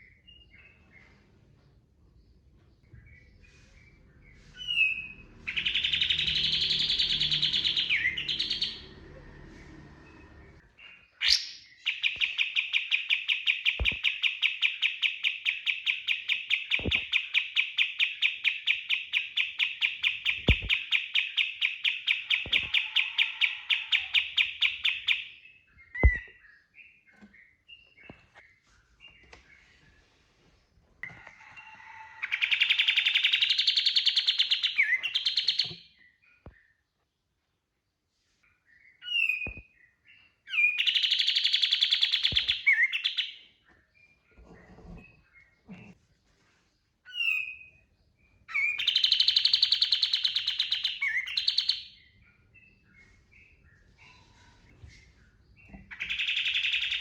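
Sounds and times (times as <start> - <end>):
short bird chirps: 3.0 - 8.8.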